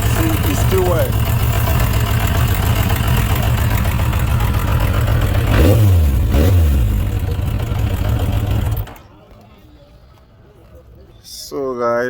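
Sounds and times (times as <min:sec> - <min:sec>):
motorcycle throttle blips: 0:00.0 - 0:09.1
motorcycle engine idling unevenly: 0:00.0 - 0:09.2.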